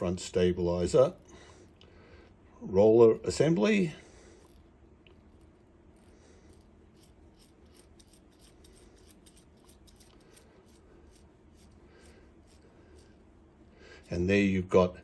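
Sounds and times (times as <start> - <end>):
scratchy ticks of threads turning: 4.4 - 13.2.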